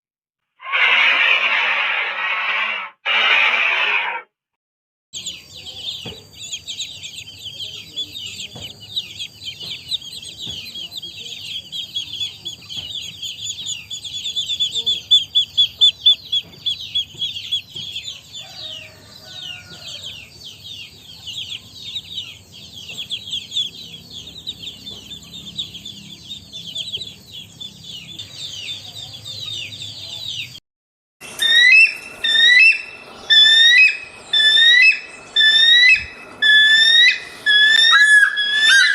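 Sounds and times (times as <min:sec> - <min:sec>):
chicks peeping: 0:05.2 - 0:30.6, 0:31.3 - 0:38.9
bird whistled calls: 0:31.2 - 0:38.9.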